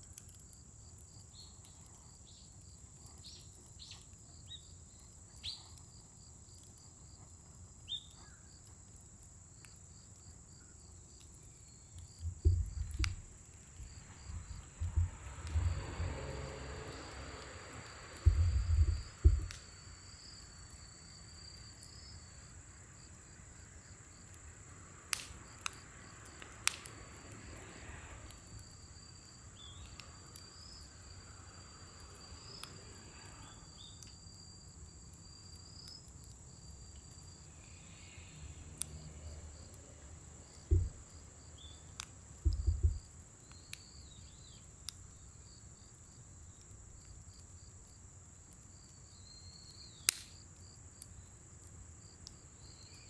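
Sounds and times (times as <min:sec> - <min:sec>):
crickets chirping: 0:00.0 - 0:53.0
wood fire popping and crackling: 0:00.0 - 0:53.0
low thumps: 0:12.2 - 0:16.3, 0:18.2 - 0:19.6, 0:40.7 - 0:41.1, 0:42.4 - 0:43.1.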